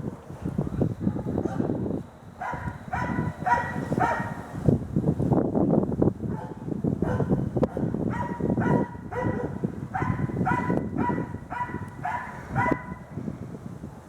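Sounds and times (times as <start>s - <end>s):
dog barking: 1.0s - 1.7s, 2.4s - 4.4s, 6.3s - 13.1s.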